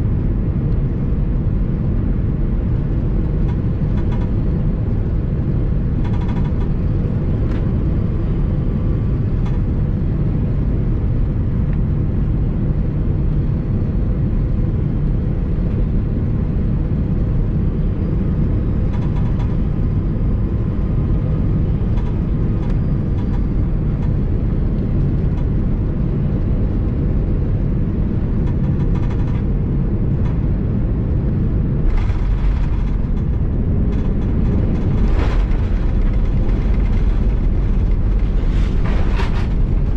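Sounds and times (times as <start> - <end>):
airliner cabin rumble: 0.0 - 39.9
light rattles and clicks: 3.2 - 9.8, 18.6 - 27.1, 28.1 - 39.9.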